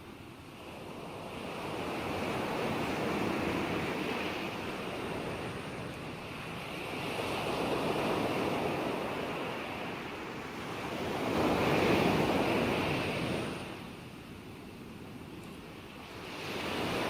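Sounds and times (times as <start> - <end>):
ocean waves breaking: 0.0 - 17.0.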